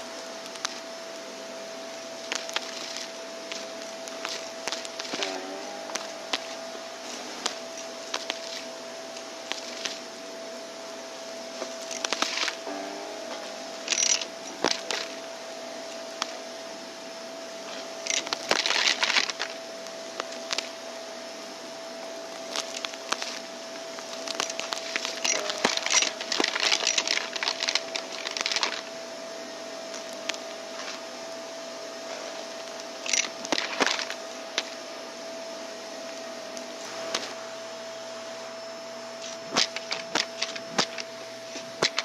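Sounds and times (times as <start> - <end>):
vacuum cleaner whine: 0.0 - 42.0
crunchy debris crackling: 0.4 - 0.9, 2.0 - 10.1, 11.5 - 12.8, 13.4 - 15.3, 17.7 - 20.8, 22.2 - 28.9, 29.9 - 31.1, 32.2 - 34.8, 39.2 - 42.0.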